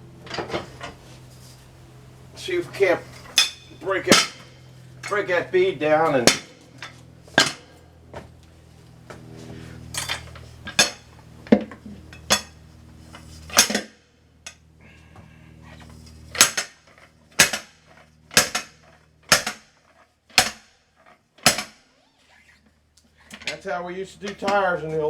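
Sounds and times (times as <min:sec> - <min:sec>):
metallic clanks of bead breaker: 0:03.2 - 0:05.2, 0:06.2 - 0:07.7, 0:10.0 - 0:12.6, 0:13.5 - 0:13.9, 0:16.3 - 0:19.6.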